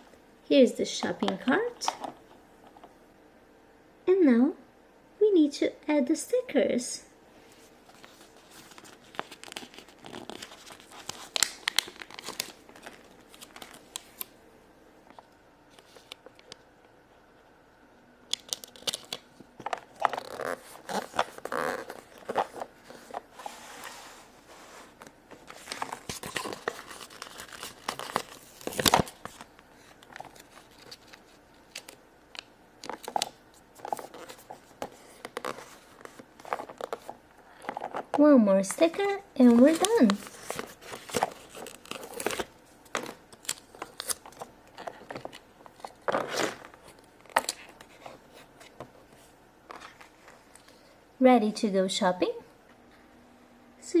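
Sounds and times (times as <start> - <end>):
paper crinkling and tearing: 7.9 - 14.3, 20.0 - 23.9, 24.8 - 38.0, 39.4 - 48.8.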